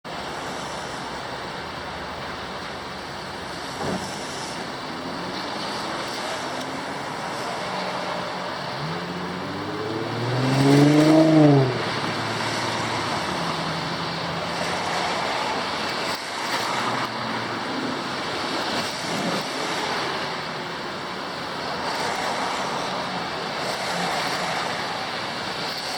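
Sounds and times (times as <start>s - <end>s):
wet-weather traffic: 0.0s - 25.9s
rain hissing: 0.1s - 25.9s
vehicle engine passing: 7.5s - 15.1s.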